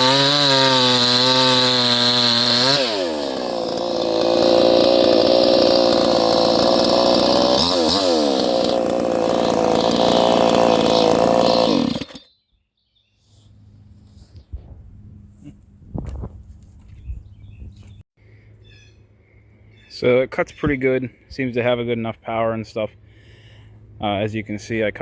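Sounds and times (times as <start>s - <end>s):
chainsaw revving: 0.0s - 12.3s.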